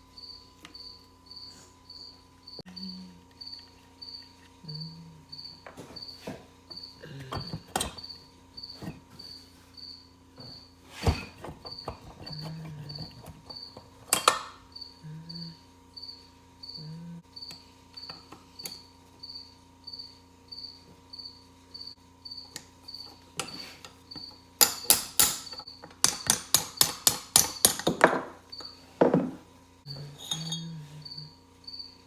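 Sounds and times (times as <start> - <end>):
cricket chirping: 0.0 - 23.2, 28.5 - 28.8, 29.9 - 32.0.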